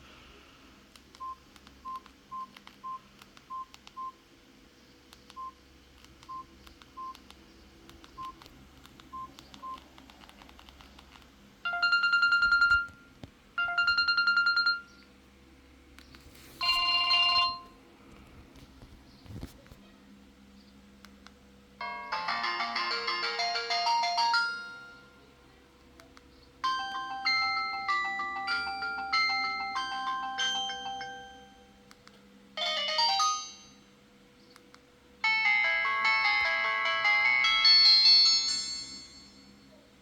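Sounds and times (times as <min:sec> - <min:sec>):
keypad beeps: 0:01.2 - 0:04.2, 0:05.3 - 0:05.6, 0:06.2 - 0:07.2, 0:08.1 - 0:08.5, 0:09.1 - 0:09.8, 0:11.7 - 0:15.0, 0:16.6 - 0:17.7
buzzy phone ringtone: 0:11.7 - 0:14.9, 0:16.6 - 0:17.8, 0:21.8 - 0:25.3, 0:26.6 - 0:31.8, 0:32.6 - 0:33.9, 0:35.2 - 0:39.7.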